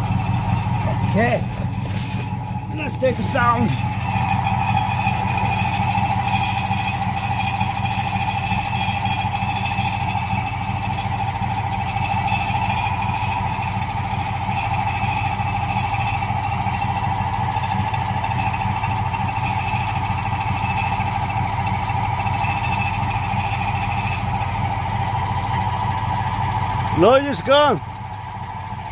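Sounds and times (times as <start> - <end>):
truck engine idling: 0.0 - 28.9
high-pitched squeal: 0.3 - 11.2.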